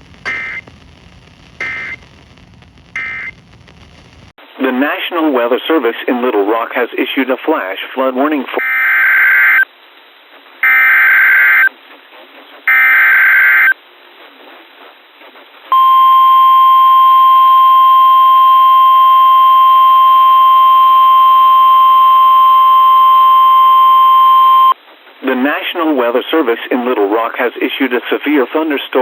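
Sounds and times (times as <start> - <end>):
warbling data tones: 0.0 - 0.8, 1.4 - 2.2, 2.9 - 3.4
steady warning alarm tone: 0.2 - 0.7, 1.6 - 2.0, 3.0 - 3.3.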